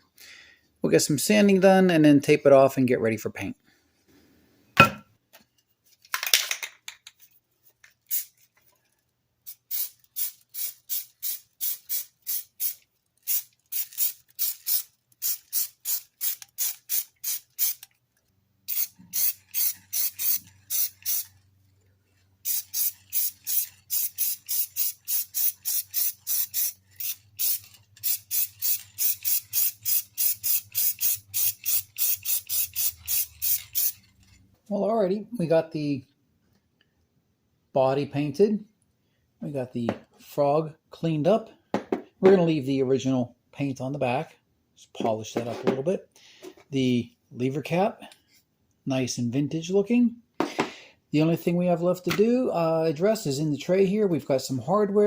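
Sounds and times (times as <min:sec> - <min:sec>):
sandpaper rasping on metal: 0:22.5 - 0:34.0.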